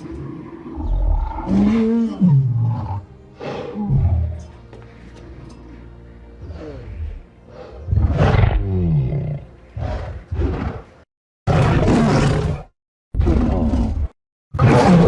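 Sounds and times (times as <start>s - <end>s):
creature roars: 0.0s - 4.2s, 11.5s - 15.0s.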